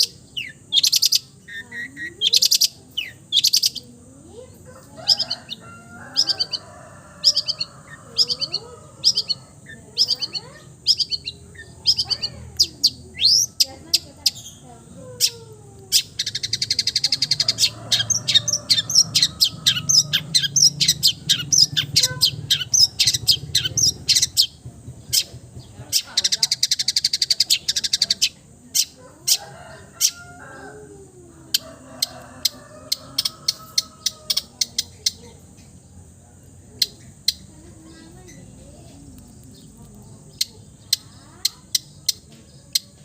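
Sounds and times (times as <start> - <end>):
shrike singing sharp chirps: 7.2 - 14.6, 15.9 - 25.4.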